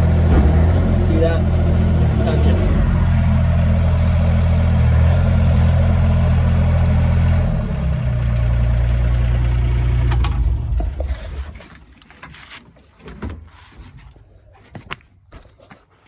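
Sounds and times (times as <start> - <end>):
diesel engine running: 0.0 - 11.8.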